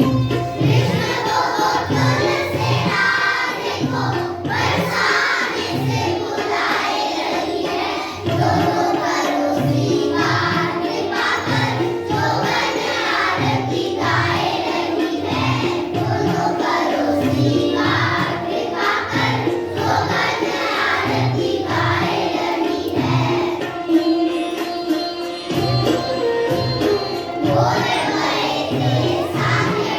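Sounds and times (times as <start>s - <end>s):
steady drum beat: 0.0s - 24.2s, 26.7s - 29.9s
children's choir singing: 0.0s - 29.9s.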